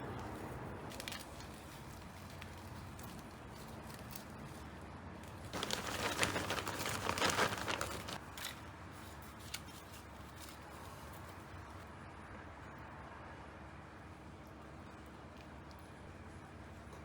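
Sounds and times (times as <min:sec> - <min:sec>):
plastic rustling and crinkling: 0:00.9 - 0:11.7.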